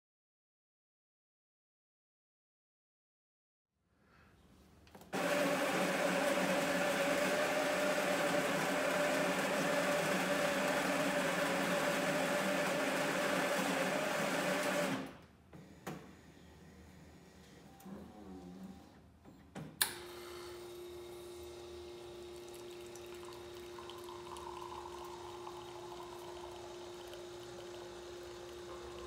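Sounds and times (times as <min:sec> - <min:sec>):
coffee grinder running: 0:05.1 - 0:15.1, 0:20.5 - 0:29.0.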